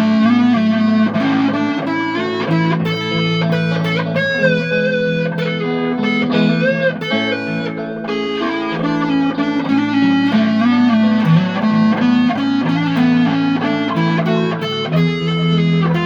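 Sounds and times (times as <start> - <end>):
distorted electric guitar riff: 0.0 - 16.0.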